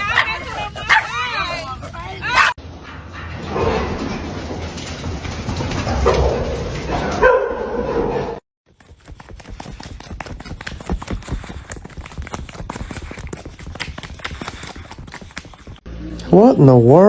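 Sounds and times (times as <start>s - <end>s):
dog barking: 0.0s - 1.2s, 2.2s - 2.6s, 6.0s - 8.4s.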